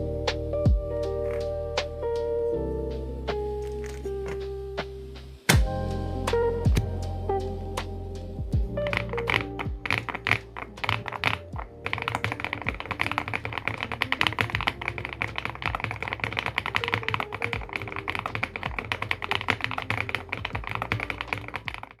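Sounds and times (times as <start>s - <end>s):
background music: 0.0s - 22.0s
fast typing on mechanical keyboard: 8.8s - 22.0s.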